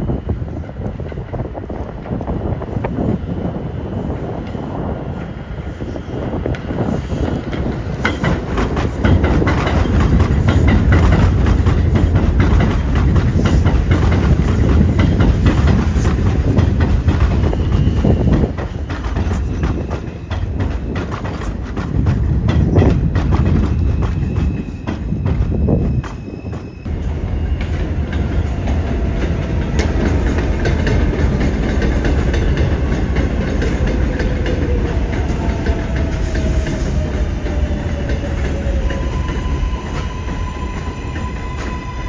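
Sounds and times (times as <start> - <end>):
subway train rumbling: 0.0 - 42.0
wheels clicking over rail joints: 6.5 - 26.8.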